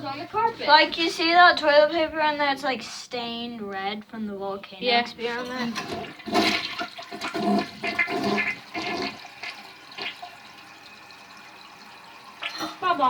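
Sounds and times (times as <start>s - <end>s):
toilet flushing: 5.3s - 13.0s.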